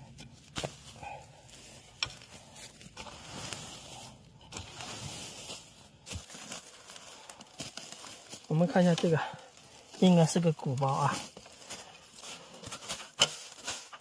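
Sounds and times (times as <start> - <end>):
dry leaf litter rustling: 0.1 - 14.0.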